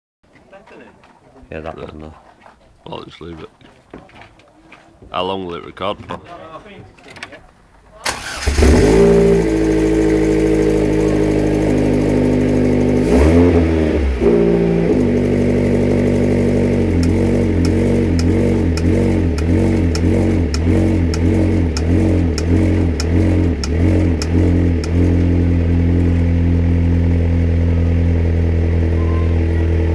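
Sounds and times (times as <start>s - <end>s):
car engine idling: 8.1s - 13.1s, 13.9s - 29.9s
engine revving: 8.1s - 29.9s
sharp knocking clicks: 17.0s - 25.0s.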